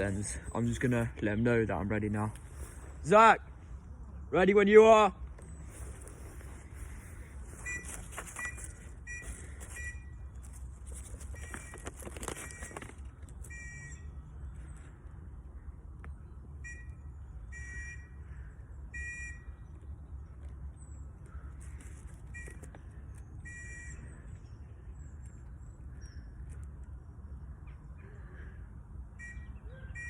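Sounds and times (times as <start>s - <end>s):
whistle blasts: 29.2s - 30.0s.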